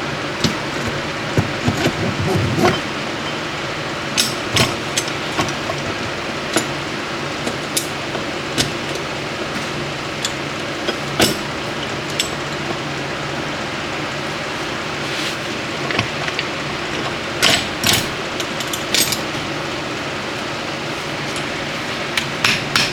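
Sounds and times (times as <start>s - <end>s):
steady background hum: 0.0s - 22.9s
metal parts clinking and knocking: 4.2s - 6.8s, 7.4s - 12.9s, 15.9s - 19.5s.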